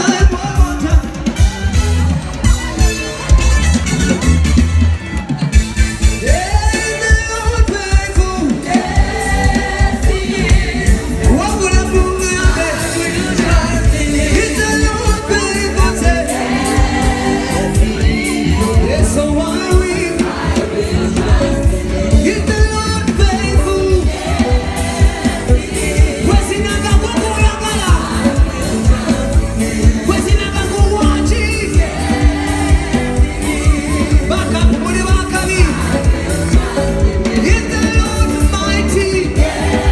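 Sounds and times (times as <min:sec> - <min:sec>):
band playing gospel music: 0:00.0 - 0:39.9
person singing: 0:06.2 - 0:24.7.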